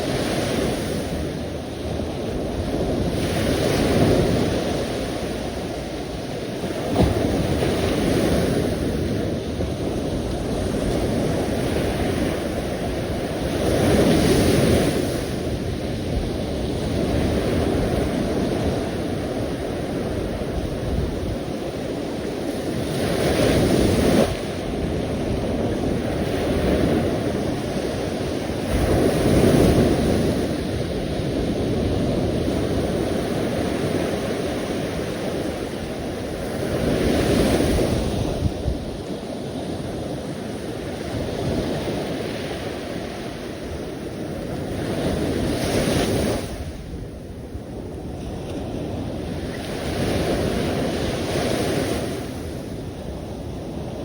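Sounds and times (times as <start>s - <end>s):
sea waves breaking on shore: 0.0s - 54.0s.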